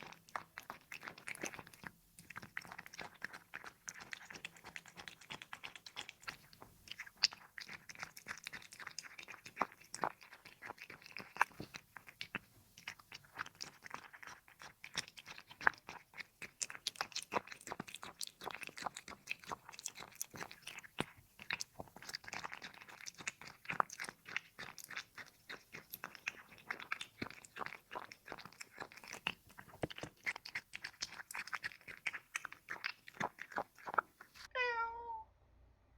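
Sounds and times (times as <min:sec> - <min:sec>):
cat crunching food: 0:00.0 - 0:34.5.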